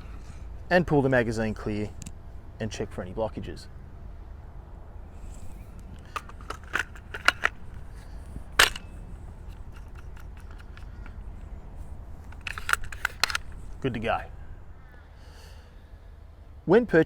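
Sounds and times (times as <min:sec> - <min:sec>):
nail gun parts clicking: 0:05.8 - 0:11.4, 0:12.2 - 0:14.0.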